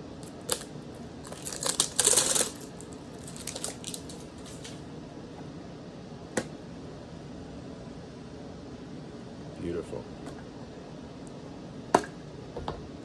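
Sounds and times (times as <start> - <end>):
steady background hum: 0.0 - 13.0
soft rustles and clicks: 3.2 - 4.8.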